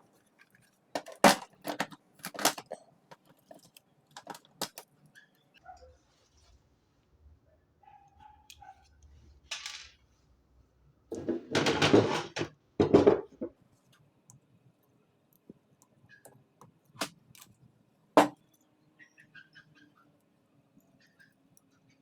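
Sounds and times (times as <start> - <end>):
hard plastic parts clattering: 0.4 - 4.8, 11.1 - 13.5.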